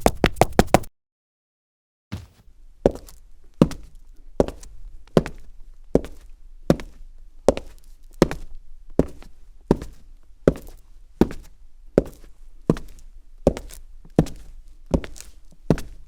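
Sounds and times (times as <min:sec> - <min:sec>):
footsteps on hard surface: 0:00.0 - 0:00.9, 0:02.1 - 0:02.4.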